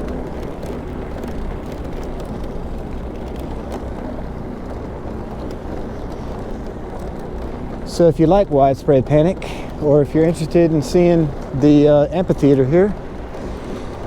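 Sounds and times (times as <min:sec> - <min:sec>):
bicycle rumble on paved path: 0:00.0 - 0:14.0
wind rush: 0:00.0 - 0:14.0.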